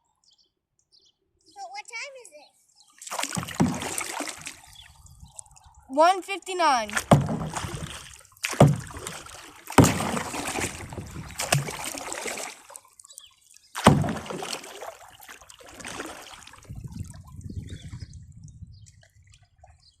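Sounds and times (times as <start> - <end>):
low water slosh: 3.0 - 5.8, 6.9 - 20.0
water splashing: 3.0 - 18.3.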